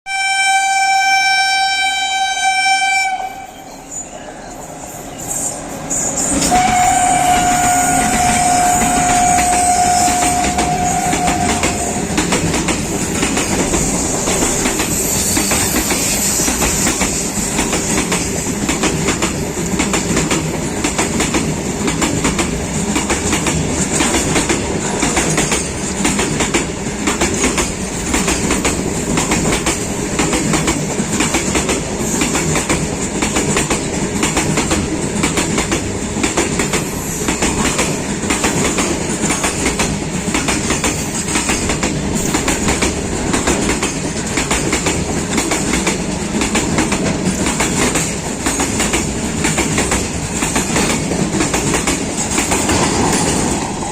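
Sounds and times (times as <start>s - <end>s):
train horn: 0.1s - 3.9s, 6.1s - 12.2s
train wheels clattering: 5.1s - 53.9s.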